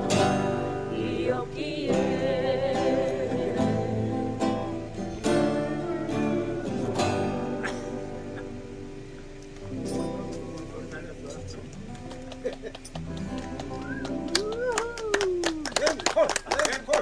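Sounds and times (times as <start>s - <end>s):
person singing: 0.0s - 8.6s
acoustic guitar strumming: 0.0s - 15.7s.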